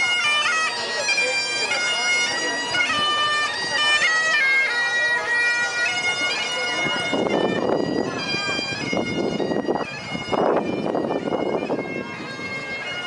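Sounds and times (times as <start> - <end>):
bagpipes playing a tune: 0.0 - 13.0.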